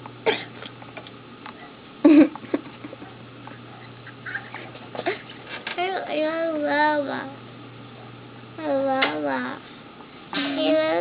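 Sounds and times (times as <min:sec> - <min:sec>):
toddler coughing: 0:00.2 - 0:00.6.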